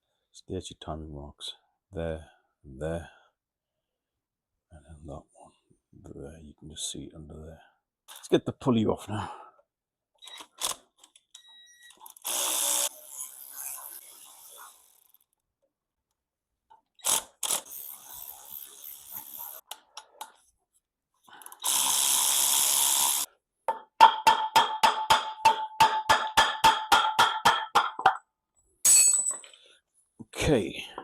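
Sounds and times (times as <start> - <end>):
power tool running: 12.2 - 15.0, 21.6 - 23.3.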